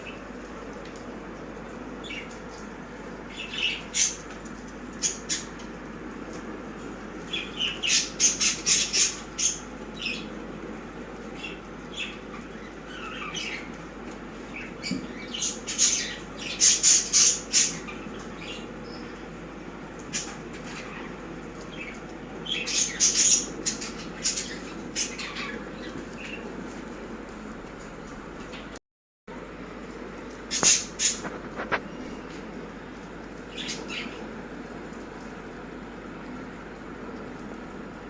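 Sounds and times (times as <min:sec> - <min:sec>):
budgerigars chirping and squawking: 0:07.3 - 0:10.2, 0:14.6 - 0:19.0, 0:21.8 - 0:26.4, 0:30.5 - 0:31.7.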